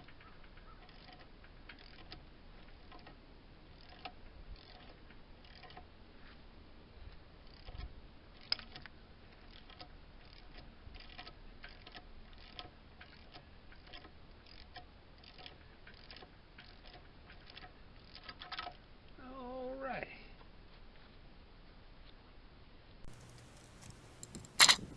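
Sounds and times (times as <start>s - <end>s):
hand tools clicking on metal: 0.0s - 5.9s, 7.5s - 18.8s.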